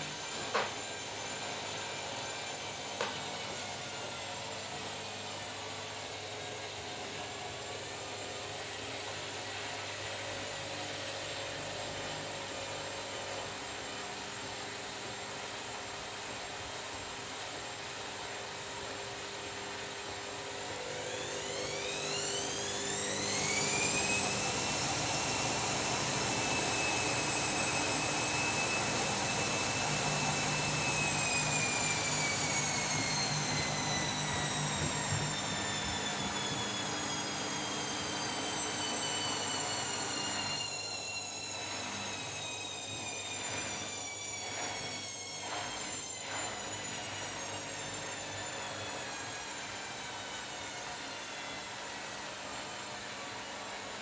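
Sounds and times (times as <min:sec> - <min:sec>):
washing machine drum spinning: 0:23.3 - 0:40.3.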